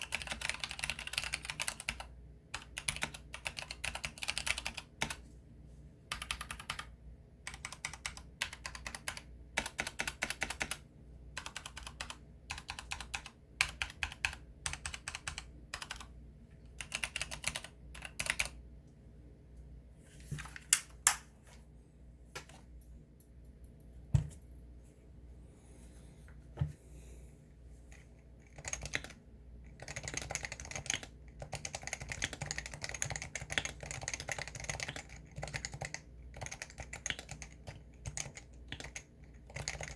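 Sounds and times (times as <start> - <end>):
typing on keyboard: 0.0 - 5.2, 6.1 - 6.9, 7.5 - 10.8, 11.4 - 16.1, 16.7 - 18.6, 27.9 - 39.9.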